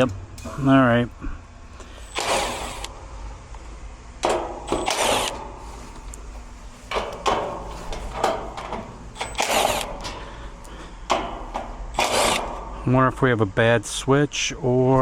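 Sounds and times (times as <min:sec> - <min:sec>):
steady low hum: 0:00.0 - 0:15.0
tool and handling noise: 0:01.8 - 0:02.9, 0:04.2 - 0:12.8.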